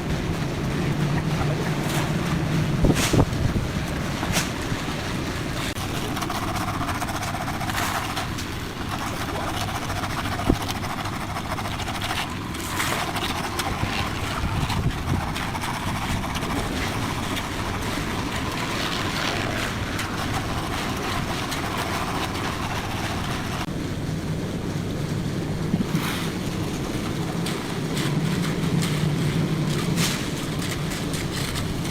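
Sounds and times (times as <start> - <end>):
concrete mixer engine rumbling: 0.0 - 31.9.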